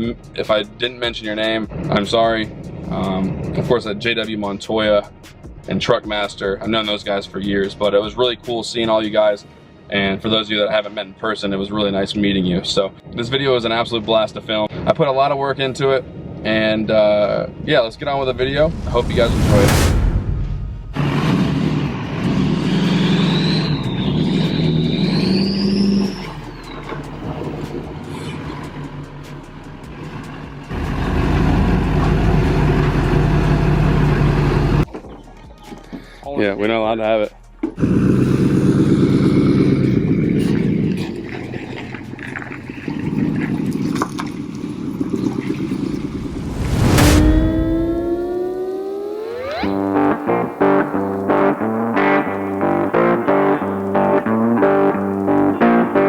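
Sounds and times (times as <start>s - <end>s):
diesel truck engine revving: 18.0s - 34.8s, 37.8s - 56.0s
turbo whistle: 21.1s - 27.2s.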